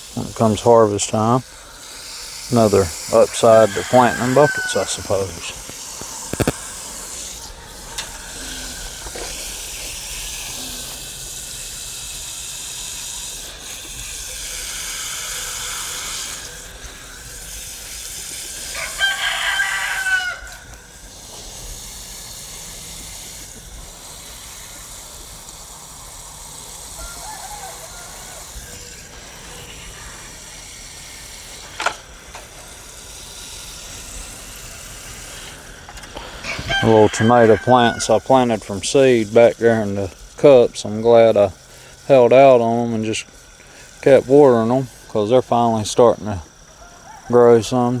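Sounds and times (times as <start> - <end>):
microphone interference hiss: 0.0 - 11.0, 34.4 - 42.4
rooster crowing: 2.7 - 6.6, 18.7 - 20.8, 26.8 - 29.1, 36.4 - 38.5, 46.6 - 47.6.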